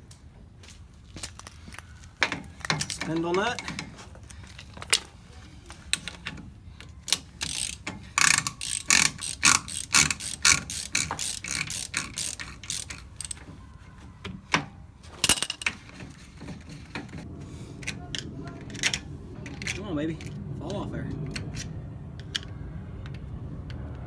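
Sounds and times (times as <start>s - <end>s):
ratchet wrench clicking: 2.2s - 3.9s, 7.0s - 13.5s.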